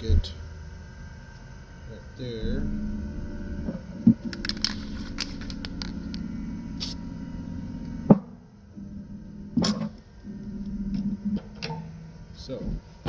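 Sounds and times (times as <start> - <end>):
steady low hum: 0.0 - 13.0
clicks: 2.6 - 7.1
aerosol spray can hissing: 6.8 - 7.1.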